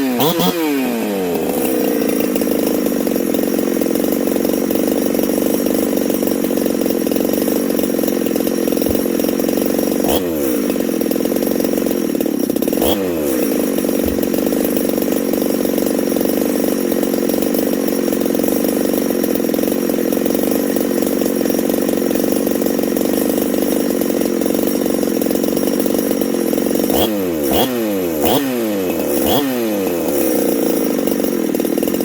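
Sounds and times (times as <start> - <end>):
chainsaw engine running: 0.0 - 32.0.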